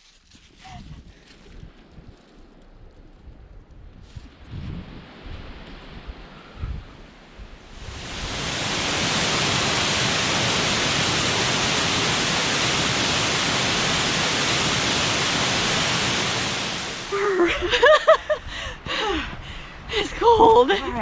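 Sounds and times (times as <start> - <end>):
waterfall roaring: 7.6 - 17.6.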